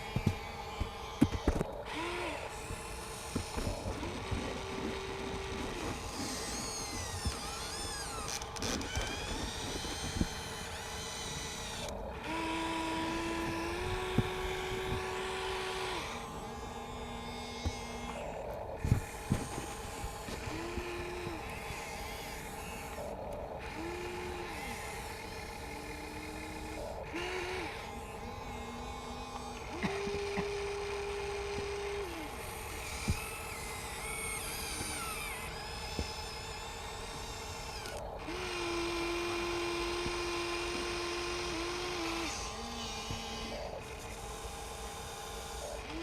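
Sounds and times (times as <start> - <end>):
small electric motors whining: 0.0 - 46.0
steady hum: 0.0 - 46.0
sharp clicks and knocks: 0.1 - 1.8.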